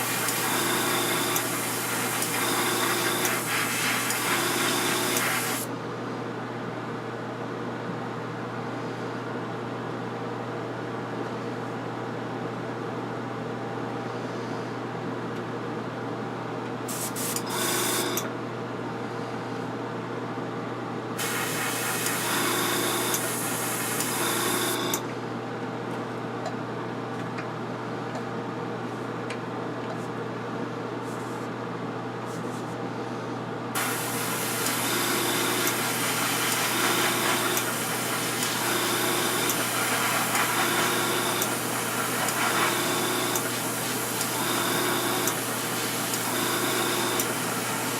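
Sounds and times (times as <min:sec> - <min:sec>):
paint spraying in hissing bursts: 0:00.0 - 0:00.6, 0:01.2 - 0:05.6, 0:16.9 - 0:17.4, 0:21.2 - 0:22.3, 0:23.2 - 0:24.0, 0:33.8 - 0:38.7, 0:39.3 - 0:44.4.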